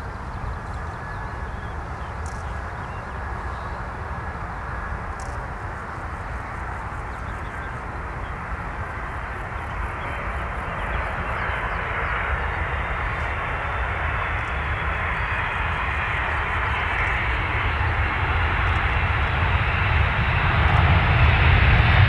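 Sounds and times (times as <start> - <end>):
jet engines at takeoff: 0.0 - 22.0.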